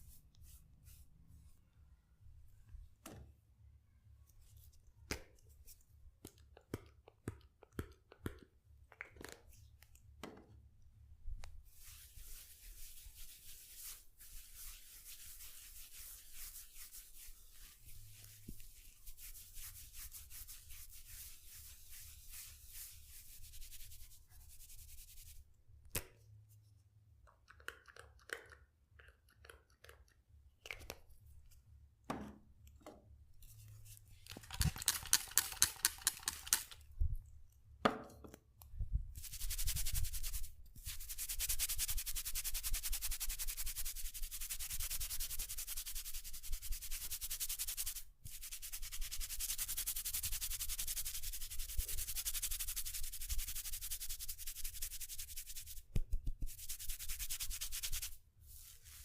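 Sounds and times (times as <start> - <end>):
hands rubbing scalp and hair: 0.0 - 1.6, 11.4 - 25.5, 33.4 - 37.0, 38.9 - 59.0.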